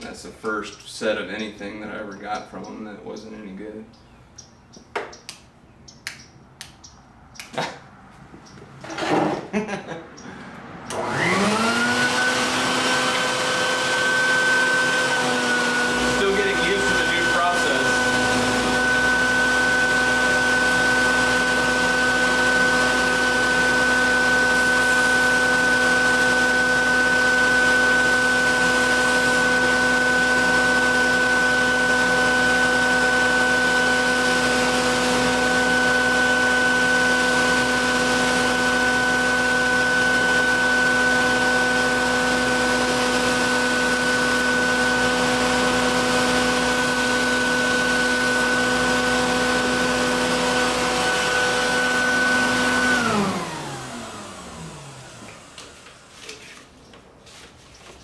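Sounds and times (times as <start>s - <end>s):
belt grinder running: 10.9s - 56.3s.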